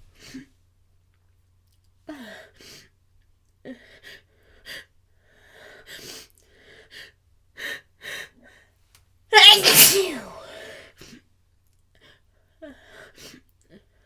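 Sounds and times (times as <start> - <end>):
person gasping before sneeze: 9.4 - 10.7.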